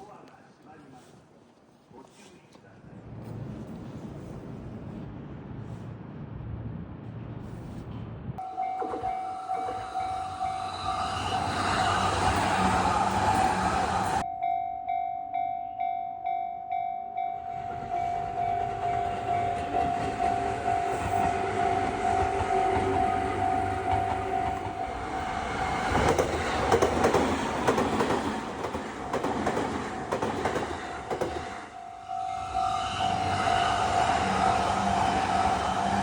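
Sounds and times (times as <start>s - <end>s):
level crossing warning bell: 8.4s - 11.5s, 14.0s - 25.2s, 31.7s - 33.3s
train wheels clattering over rail joints: 22.1s - 31.6s.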